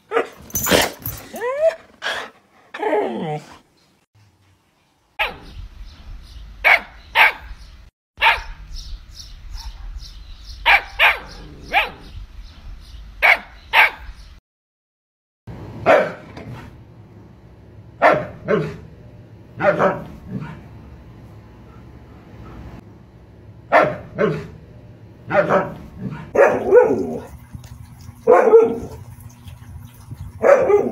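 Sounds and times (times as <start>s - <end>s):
dog barking: 5.2s - 5.4s, 6.6s - 7.5s, 8.2s - 8.5s, 10.6s - 12.0s, 13.2s - 14.1s, 15.8s - 16.3s, 18.0s - 18.8s, 19.6s - 20.7s, 23.7s - 24.6s, 25.3s - 27.4s, 28.2s - 29.0s, 30.4s - 30.9s.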